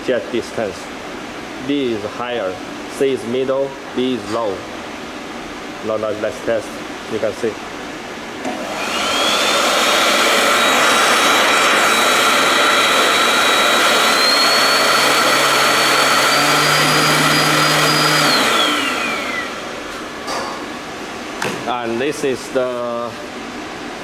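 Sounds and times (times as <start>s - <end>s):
high motor whine: 8.7s - 23.0s.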